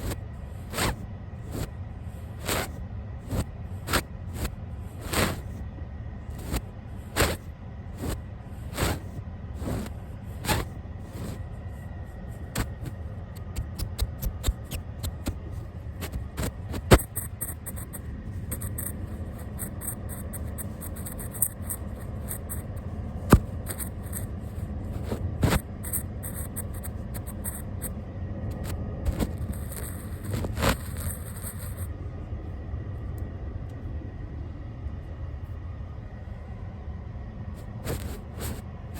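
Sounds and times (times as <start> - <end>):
brush bristles scratching microphone: 0.0 - 5.6, 6.3 - 7.4, 8.0 - 31.9, 37.6 - 38.6
sharp taps: 13.4 - 15.4.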